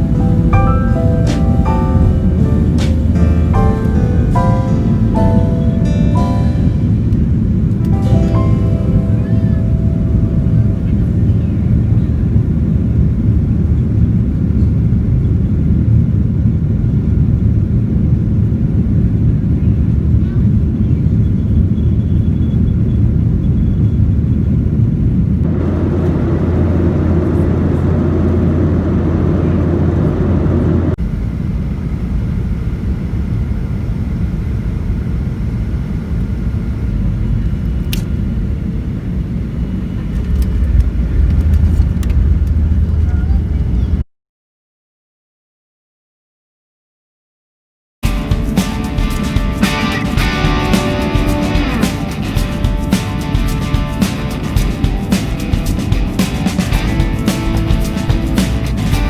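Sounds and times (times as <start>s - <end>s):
airliner cabin engine rumble: 0.0s - 24.4s, 25.4s - 44.0s.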